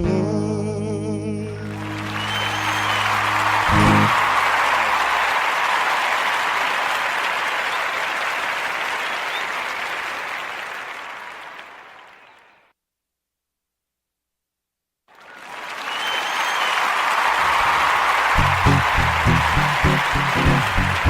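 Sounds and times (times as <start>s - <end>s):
audience applause: 1.6s - 12.5s, 15.1s - 21.0s.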